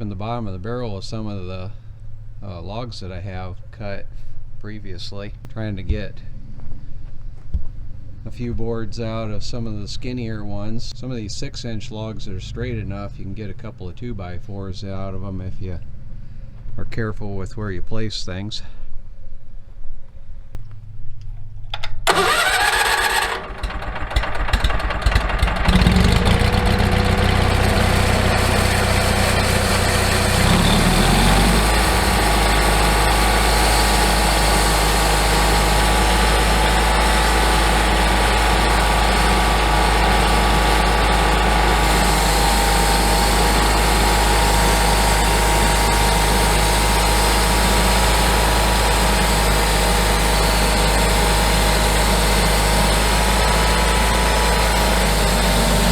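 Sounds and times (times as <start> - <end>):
sawmill engine starting and running: 21.8 - 55.9.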